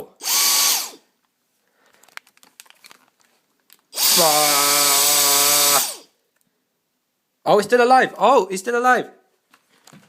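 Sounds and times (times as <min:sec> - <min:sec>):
handheld vacuum cleaner whine: 0:00.2 - 0:01.0, 0:03.9 - 0:06.1.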